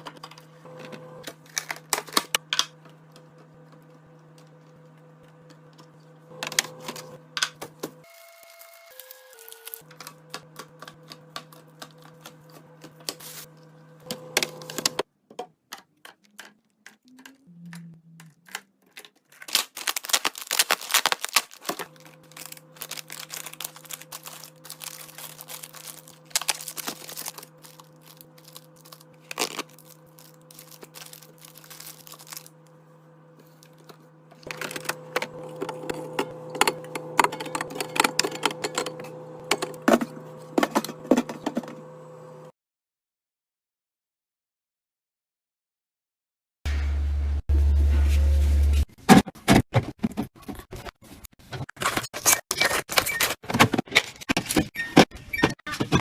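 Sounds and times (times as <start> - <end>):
small items clattering: 18.4 - 32.5
steady hum: 21.6 - 42.5.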